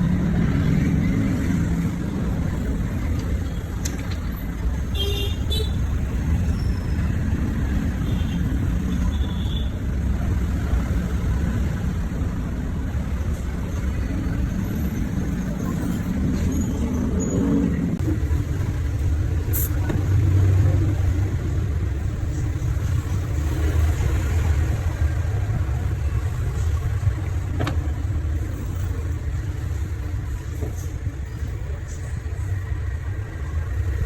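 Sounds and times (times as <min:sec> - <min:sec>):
road traffic rumble: 0:00.0 - 0:34.0.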